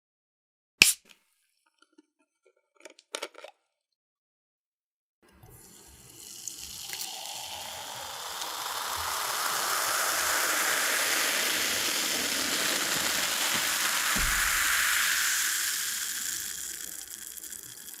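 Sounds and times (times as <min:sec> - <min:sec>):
cola pouring and fizzing: 0:05.3 - 0:18.0
low thump: 0:14.1 - 0:15.6.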